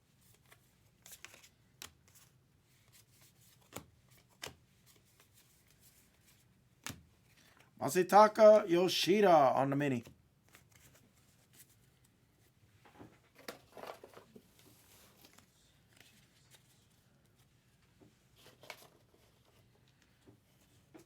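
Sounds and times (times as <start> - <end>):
cards and wrappers rustling: 0.3 - 6.5.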